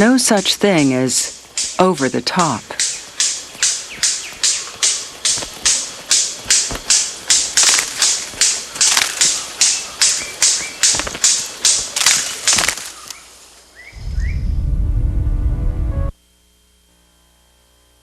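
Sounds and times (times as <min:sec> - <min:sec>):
bird giving sharp snapping calls: 0:02.8 - 0:13.3
bird short rising chirps: 0:13.8 - 0:14.6
background music: 0:14.9 - 0:16.1.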